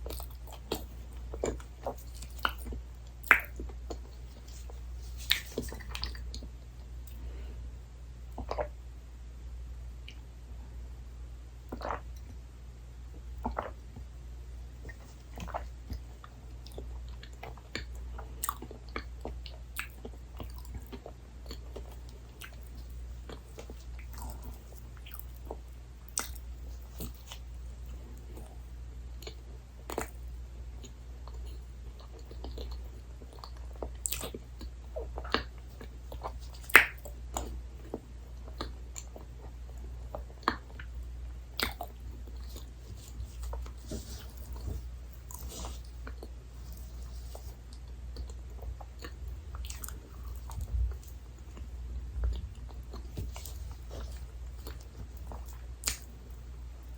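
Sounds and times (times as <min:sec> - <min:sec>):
chewing and biting: 0:00.0 - 0:06.5, 0:11.7 - 0:12.0, 0:14.8 - 0:28.6, 0:30.8 - 0:41.0, 0:41.6 - 0:56.9
low hum: 0:40.8 - 0:56.9.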